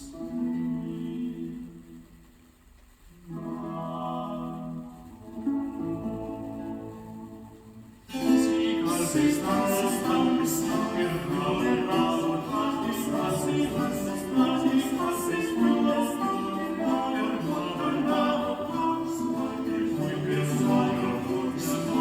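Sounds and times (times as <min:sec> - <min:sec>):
song with singing over speakers: 0:00.0 - 0:22.0.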